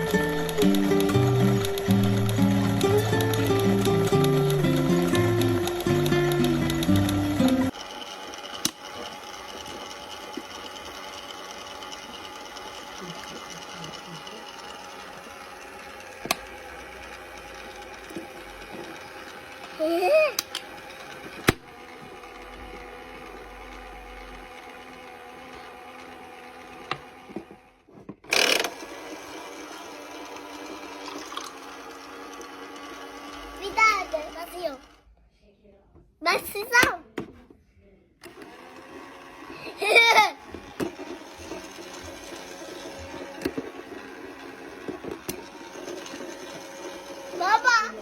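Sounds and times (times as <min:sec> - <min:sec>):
music: 0:00.0 - 0:07.7
washing machine humming: 0:00.0 - 0:35.1, 0:38.2 - 0:48.0.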